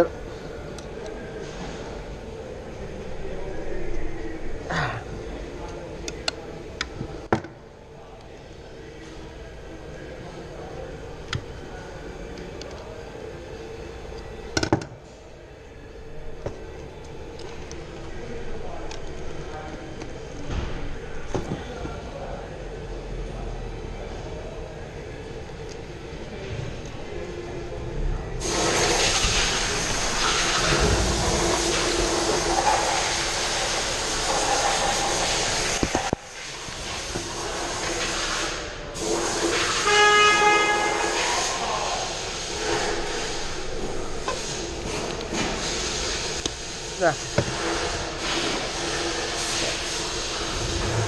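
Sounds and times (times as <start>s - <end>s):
faint steady hum: 0.0s - 48.2s
loud steady hiss: 28.0s - 51.0s.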